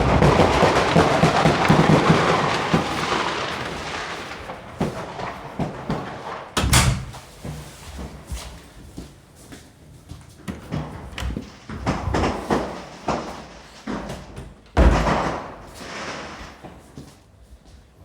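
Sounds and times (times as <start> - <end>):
firework bangs with echo: 0.0 - 7.4, 11.4 - 16.8
firecrackers crackling: 0.0 - 8.8, 10.7 - 17.0.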